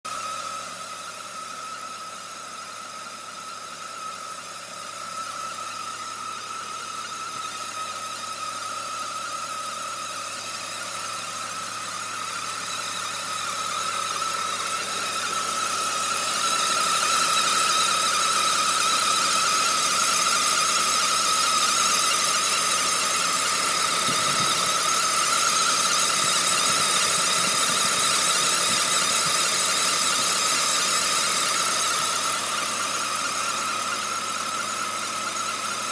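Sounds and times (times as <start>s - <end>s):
car high-pitched squeal: 12.1s - 35.8s.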